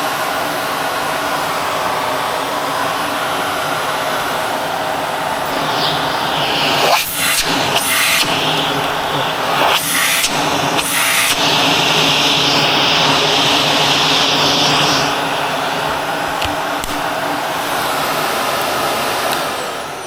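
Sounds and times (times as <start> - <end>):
high airflow hiss: 0.0 - 20.0
vacuum motor humming: 0.0 - 20.0
brief rushes of air: 5.4 - 16.2.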